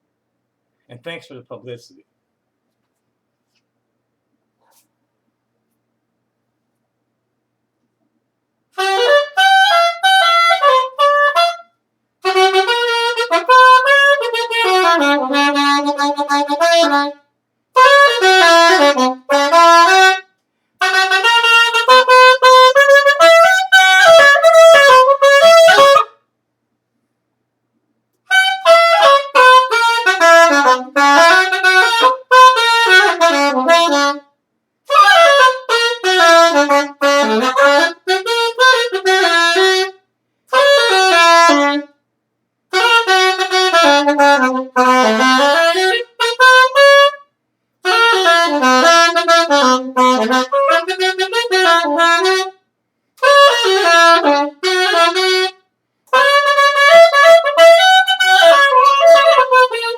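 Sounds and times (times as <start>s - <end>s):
solo horn playing runs: 8.8s - 11.6s, 12.2s - 17.2s, 17.8s - 20.2s, 20.8s - 26.1s, 28.3s - 34.2s, 34.9s - 41.9s, 42.7s - 47.2s, 47.8s - 52.6s, 53.2s - 59.9s.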